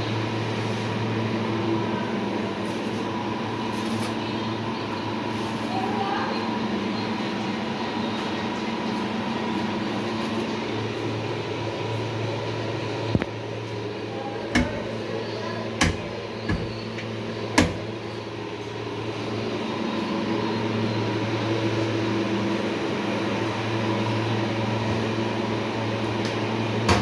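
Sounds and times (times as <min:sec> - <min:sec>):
steady low hum: 0:13.7 - 0:19.2
cabinet doors knocking shut: 0:14.6 - 0:15.0, 0:15.8 - 0:18.0.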